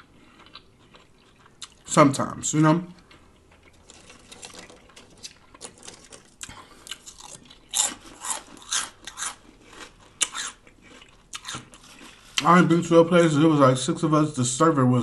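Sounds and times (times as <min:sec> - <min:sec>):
chewing crunchy food: 0:00.0 - 0:12.5.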